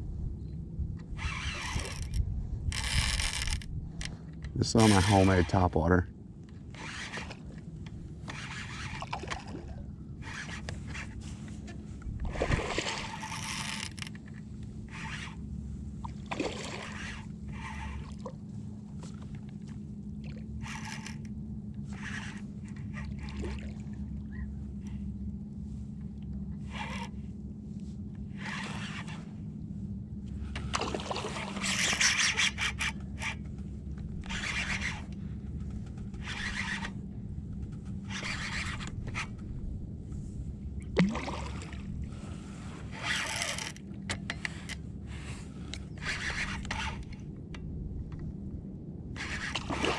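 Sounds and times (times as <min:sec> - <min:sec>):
steady low hum: 0:00.0 - 0:49.9
water splashing around kayak: 0:06.6 - 0:21.2, 0:21.8 - 0:25.0, 0:30.3 - 0:33.4, 0:40.1 - 0:43.8, 0:49.2 - 0:49.9.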